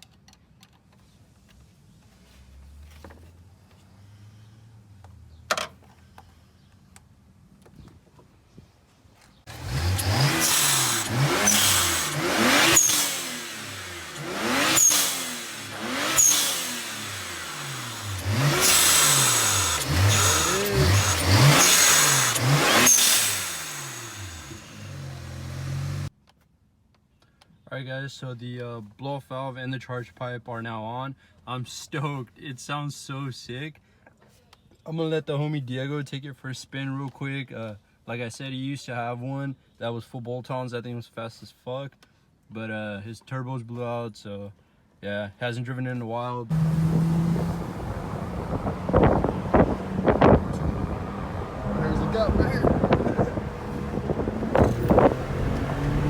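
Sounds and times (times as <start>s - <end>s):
car engine revving: 9.5s - 26.1s, 46.5s - 56.0s
blow-off valve chirps and hiss: 14.7s - 24.9s.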